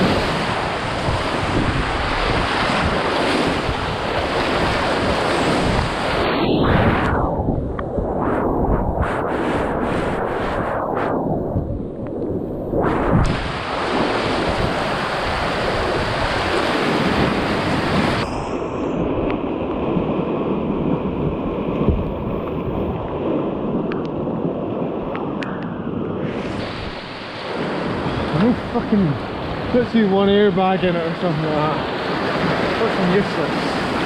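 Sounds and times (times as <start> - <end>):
whitewater rushing: 0.0 - 7.1, 12.8 - 19.2, 26.2 - 34.0
wind buffeting microphone: 0.0 - 34.0.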